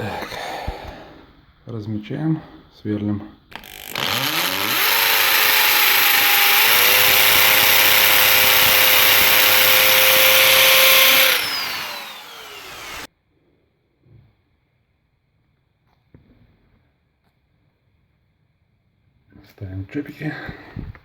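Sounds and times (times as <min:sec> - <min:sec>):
electric drill whining: 0:03.5 - 0:13.1.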